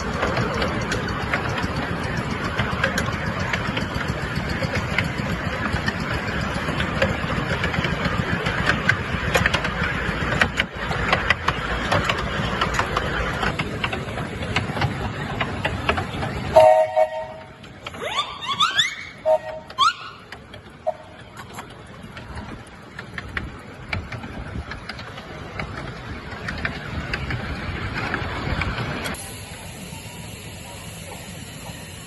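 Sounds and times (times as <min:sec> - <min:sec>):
wheels clicking on rails: 0:00.0 - 0:32.0
locomotive toot: 0:16.4 - 0:21.6
steam hissing: 0:28.7 - 0:32.0.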